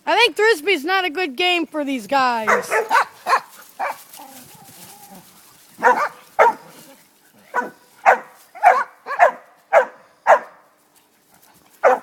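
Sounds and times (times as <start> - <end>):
dog barking: 2.5 - 4.0, 5.8 - 6.7, 7.5 - 10.6.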